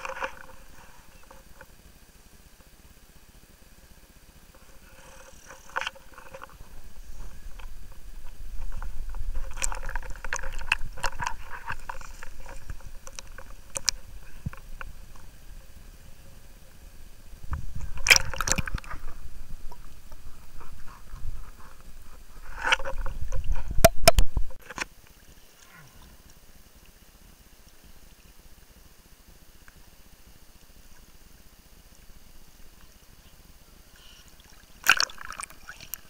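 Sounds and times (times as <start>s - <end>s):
water sloshing against a boat: 4.5s - 16.8s, 17.4s - 23.8s
low rumble: 6.0s - 24.6s
sharp splashes: 34.4s - 36.0s.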